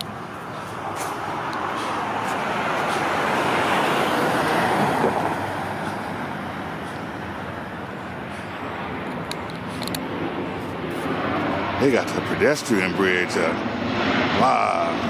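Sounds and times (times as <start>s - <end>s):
vehicle passing by: 0.0s - 15.0s.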